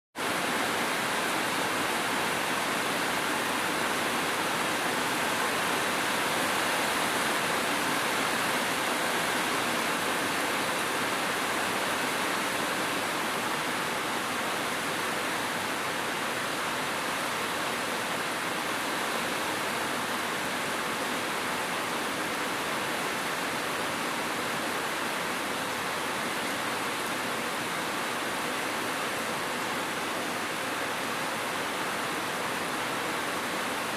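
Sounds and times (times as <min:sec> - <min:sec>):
steady rainfall: 0:00.2 - 0:33.9.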